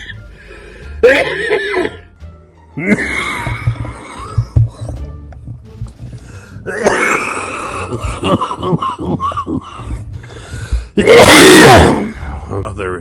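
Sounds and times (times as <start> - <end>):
man coughing and wheezing: 1.0 - 2.0, 2.8 - 4.6, 6.6 - 9.9, 11.0 - 12.2.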